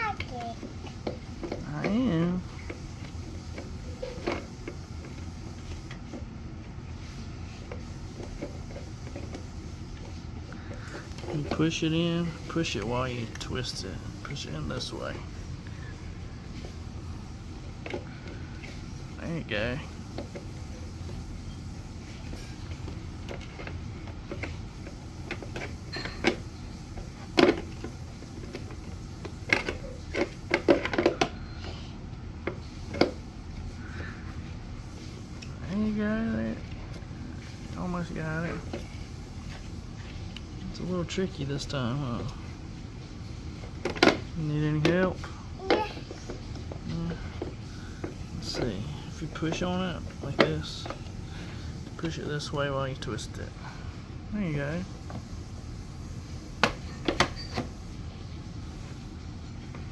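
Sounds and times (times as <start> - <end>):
plastic parts clicking and knocking: 23.2 - 31.4.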